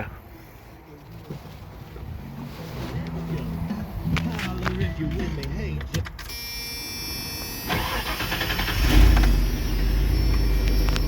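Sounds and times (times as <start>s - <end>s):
starter motor cranking: 7.7s - 10.9s.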